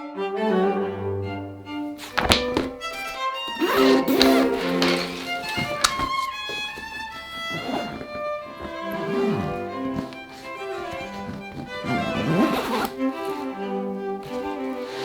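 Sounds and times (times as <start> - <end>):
violin and strings music: 0.0 - 15.0.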